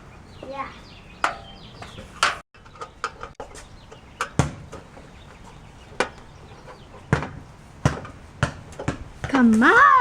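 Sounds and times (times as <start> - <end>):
hand tools clicking and knocking: 1.2 - 7.3.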